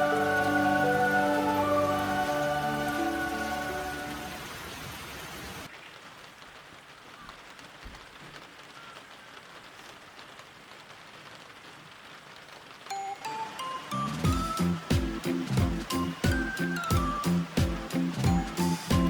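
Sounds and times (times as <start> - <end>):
background music: 0.0 - 4.5, 12.9 - 19.0
steady rain falling: 0.0 - 19.0.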